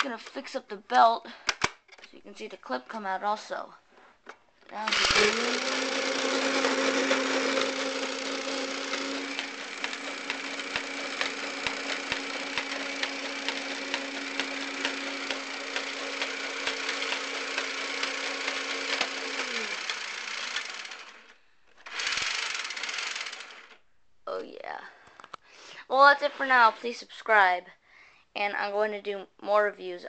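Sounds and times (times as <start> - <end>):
toy minigun motor humming: 4.8 - 23.8
sharp mechanical clicks: 7.1 - 21.2.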